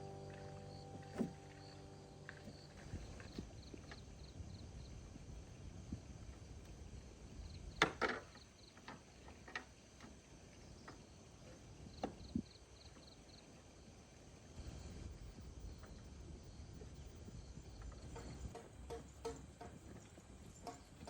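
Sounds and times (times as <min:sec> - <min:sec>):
high insect chirping: 0:00.0 - 0:06.3
sharp knocks and taps: 0:18.0 - 0:21.0.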